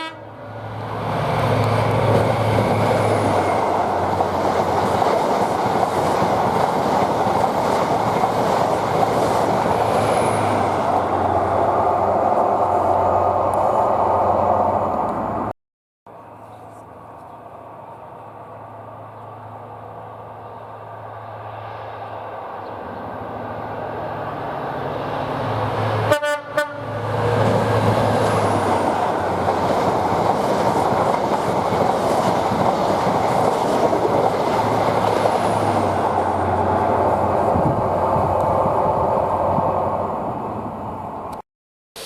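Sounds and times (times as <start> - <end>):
train passing on rails: 0.0 - 15.5, 16.1 - 41.4.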